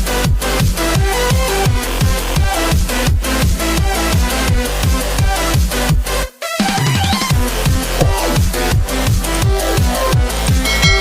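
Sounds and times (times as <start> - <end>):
electronic dance music: 8.0 - 8.6.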